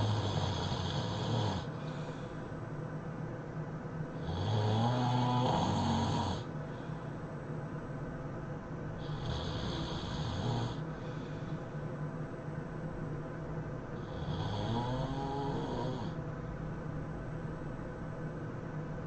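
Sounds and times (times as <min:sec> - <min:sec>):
person snoring: 0:00.0 - 0:02.2, 0:04.2 - 0:06.5, 0:09.0 - 0:11.2, 0:14.0 - 0:16.2.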